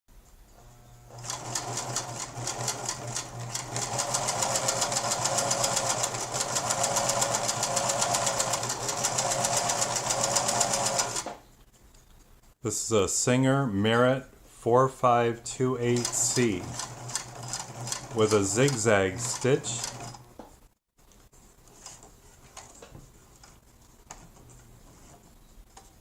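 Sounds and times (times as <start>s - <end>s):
sewing machine running: 1.0s - 11.4s, 15.9s - 20.2s.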